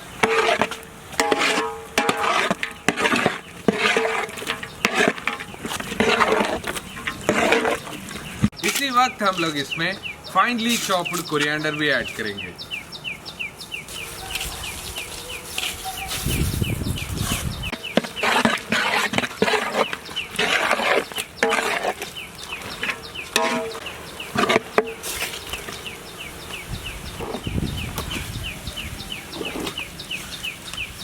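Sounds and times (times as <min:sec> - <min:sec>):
animal-like calls: 0:27.0 - 0:27.7.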